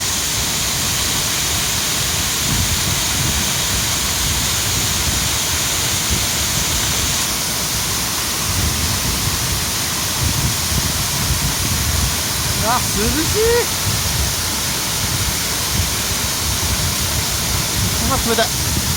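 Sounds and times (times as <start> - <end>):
mountain stream rushing: 0.0 - 18.9.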